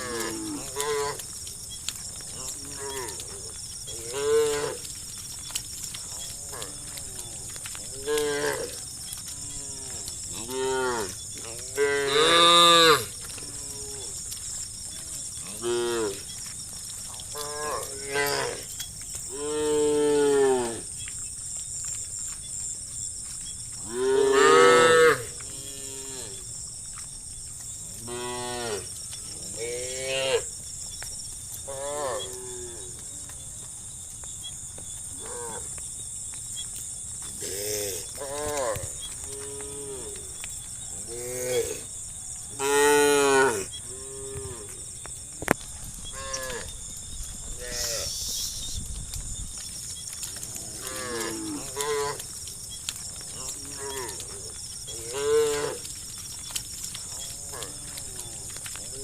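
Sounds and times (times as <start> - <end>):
cattle mooing: 2.3 - 4.9.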